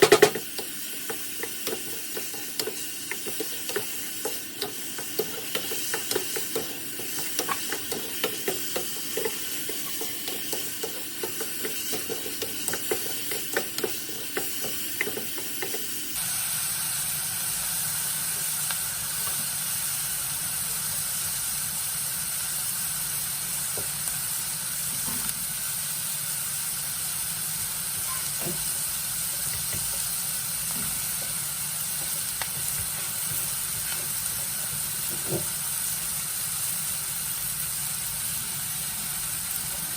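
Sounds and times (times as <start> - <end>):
spoon scraping a pan: 0.0 - 15.9
food sizzling in a pan: 0.0 - 39.9.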